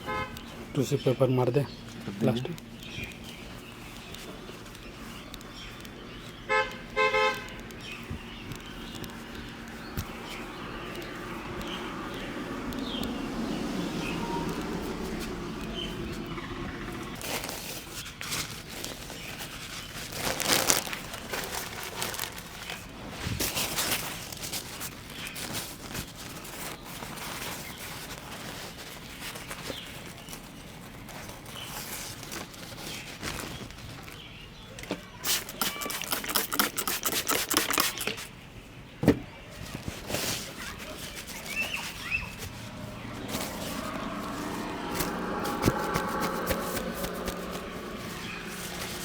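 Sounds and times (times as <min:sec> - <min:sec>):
hands rubbing skin and cloth: 0:35.2 - 0:38.3, 0:39.8 - 0:49.0
quick patting strokes: 0:35.2 - 0:38.3, 0:40.4 - 0:49.0.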